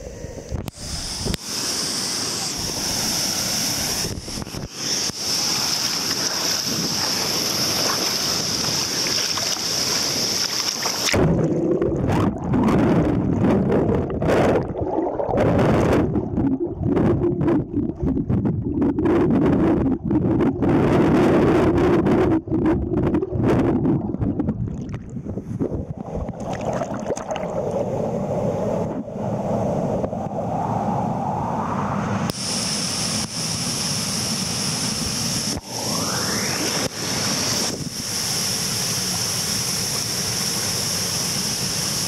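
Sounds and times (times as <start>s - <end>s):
waterfall roaring: 0.8s - 11.2s, 32.3s - 42.0s
wind buffeting microphone: 3.8s - 4.8s, 11.1s - 32.2s, 35.5s - 38.0s.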